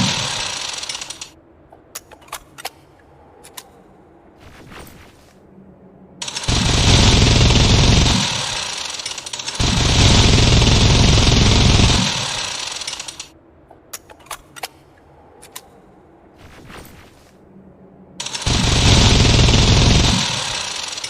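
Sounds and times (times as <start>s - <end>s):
minigun rapid fire: 0.0s - 1.3s, 6.2s - 13.3s, 18.2s - 21.0s
sharp clicks: 0.0s - 2.8s, 6.2s - 13.3s.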